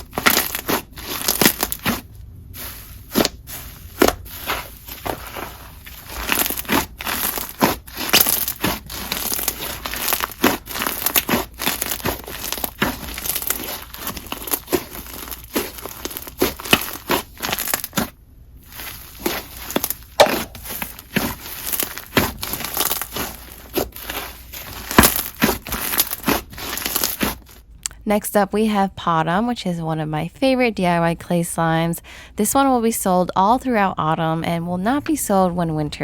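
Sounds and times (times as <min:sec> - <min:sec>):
hands squishing slime: 0:00.0 - 0:27.7
slime crackling and popping: 0:00.0 - 0:27.8.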